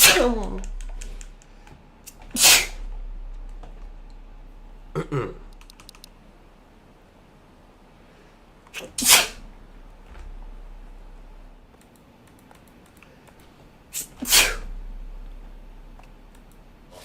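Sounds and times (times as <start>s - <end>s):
person sneezing: 0.0s - 0.4s, 2.3s - 2.9s, 8.8s - 9.4s, 13.9s - 14.7s.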